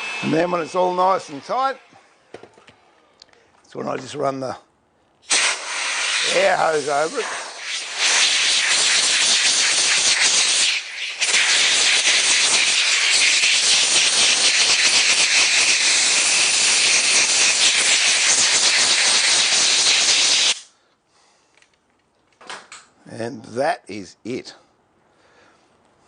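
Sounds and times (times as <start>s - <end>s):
compressed air hose hissing: 5.2s - 20.8s.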